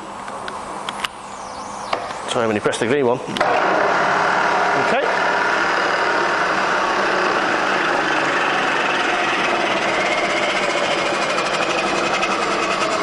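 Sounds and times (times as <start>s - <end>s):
milling machine motor humming: 3.3s - 13.0s.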